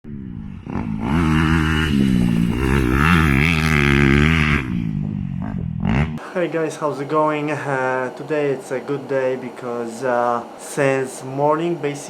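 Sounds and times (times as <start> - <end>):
dirt bike engine revving: 0.0 - 6.2.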